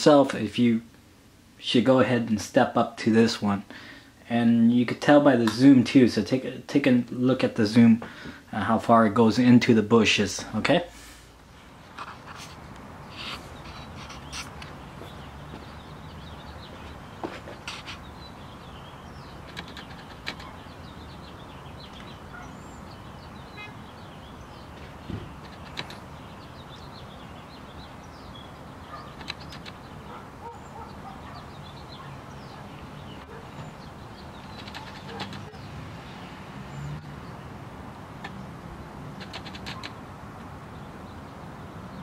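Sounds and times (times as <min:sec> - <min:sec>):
small birds chirping: 0:11.4 - 0:42.0
short clicks: 0:29.2 - 0:29.8, 0:39.2 - 0:40.0.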